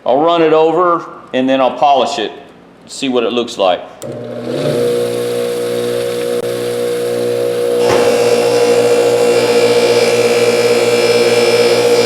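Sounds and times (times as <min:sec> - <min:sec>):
bench motor humming: 0:04.0 - 0:12.0.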